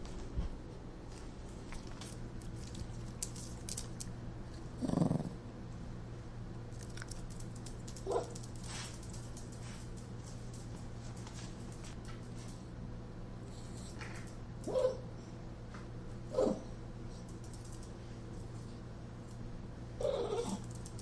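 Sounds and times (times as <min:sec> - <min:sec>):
steady low hum: 0:00.0 - 0:21.0
dog low vocal sound: 0:04.8 - 0:05.4
dog whimpering: 0:20.0 - 0:20.6.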